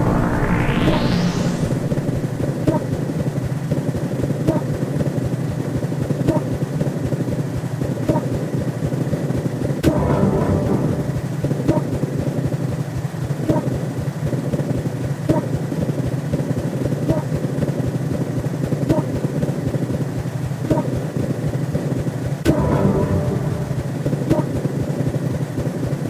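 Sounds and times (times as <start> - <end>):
short pitched blips: 0.0 - 3.7
low electronic rumble: 0.0 - 5.6, 9.8 - 12.5, 22.4 - 24.3.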